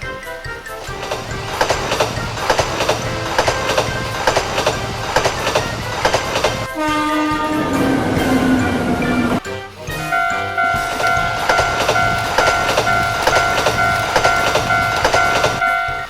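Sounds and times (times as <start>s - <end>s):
toy train motor hum: 0.8s - 6.7s, 10.6s - 16.0s
toy train track clicks: 0.8s - 6.7s, 10.6s - 16.0s.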